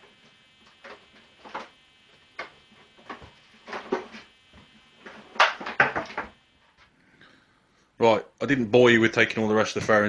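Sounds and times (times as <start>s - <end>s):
knocks and clatters of tools: 0.6s - 1.7s, 2.4s - 6.4s.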